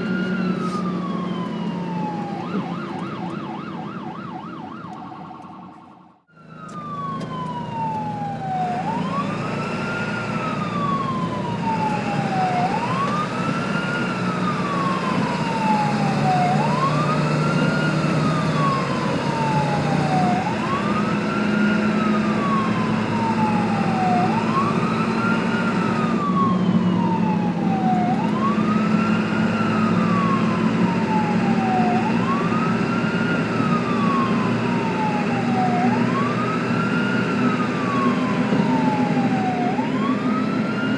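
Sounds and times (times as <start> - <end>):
ambulance siren wailing: 0.0 - 40.9.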